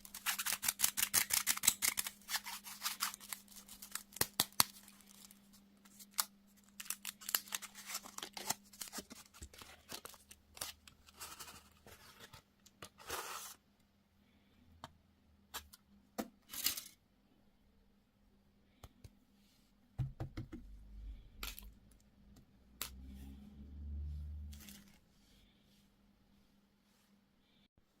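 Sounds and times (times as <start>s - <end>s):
wrapper tearing: 0.0s - 10.9s
plastic wrapper crinkling: 1.4s - 11.2s.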